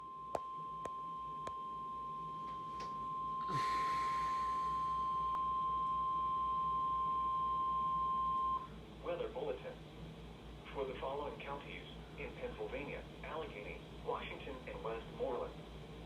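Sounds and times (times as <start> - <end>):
high-pitched alarm tone: 0.0 - 8.7
radio static hiss: 9.0 - 16.0.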